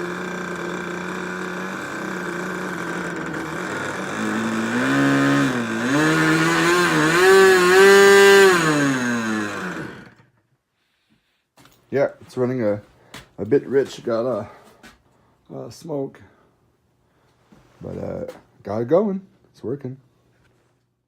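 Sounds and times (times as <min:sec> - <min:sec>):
model engine running and revving: 0:00.0 - 0:10.2.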